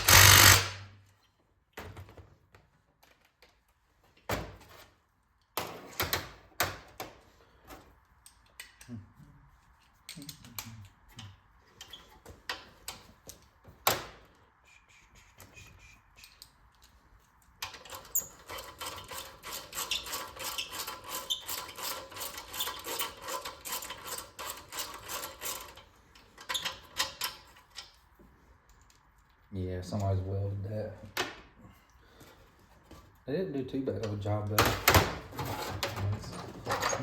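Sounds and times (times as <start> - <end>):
impact wrench hammering on bolt: 0.0 - 0.9.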